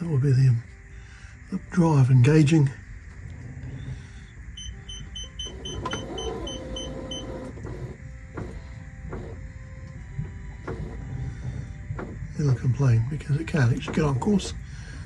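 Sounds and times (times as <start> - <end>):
motor hum: 3.0 - 15.0
rapid high beeps: 4.6 - 7.4.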